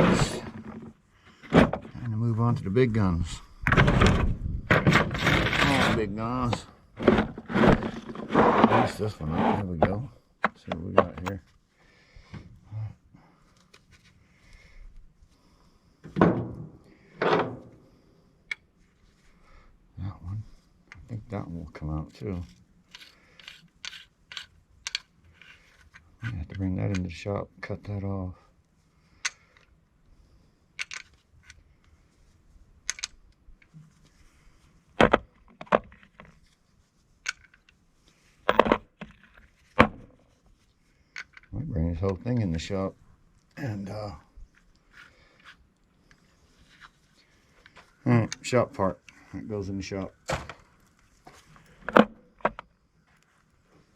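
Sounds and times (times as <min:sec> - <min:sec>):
scrap metal parts clinking: 0:22.9 - 0:25.6.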